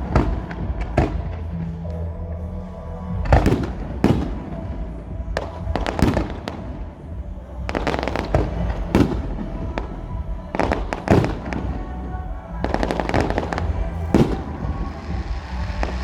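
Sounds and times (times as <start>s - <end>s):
fireworks bangs and crackling: 0.0s - 1.5s, 3.2s - 11.9s, 12.6s - 16.0s.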